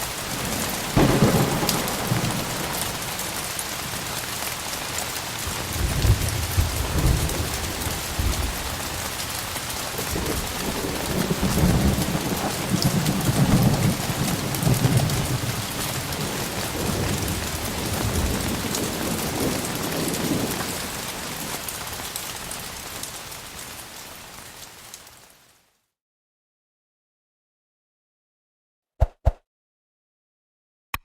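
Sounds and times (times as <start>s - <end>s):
heavy rain falling: 0.0s - 25.5s
low rolls of thunder: 0.1s - 4.0s, 5.4s - 9.0s, 10.0s - 21.5s.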